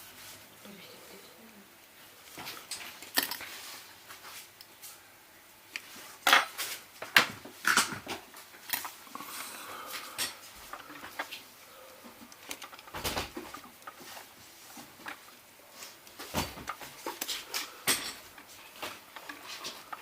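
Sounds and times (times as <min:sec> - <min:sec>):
small tools clicking and tapping: 0:09.9 - 0:15.4, 0:16.0 - 0:20.0.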